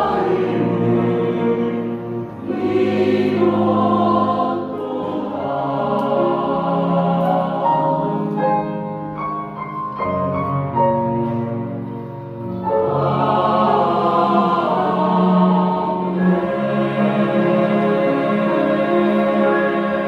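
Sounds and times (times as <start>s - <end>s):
choir singing: 0.0s - 9.1s, 11.2s - 20.0s
keyboard accompaniment: 0.0s - 20.0s.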